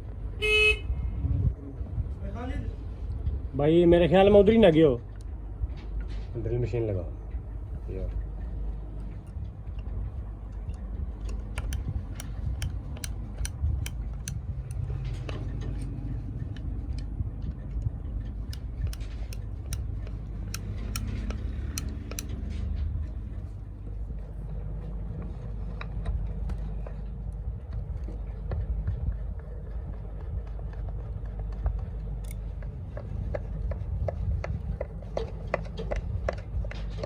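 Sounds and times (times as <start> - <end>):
light sharp clicks and taps: 10.6 - 14.8, 18.5 - 22.4.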